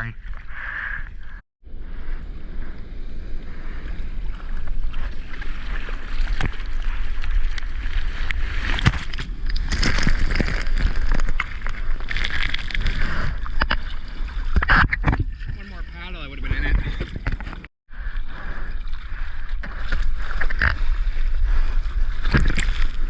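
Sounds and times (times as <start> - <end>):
water splashing and rushing: 3.5 - 23.0.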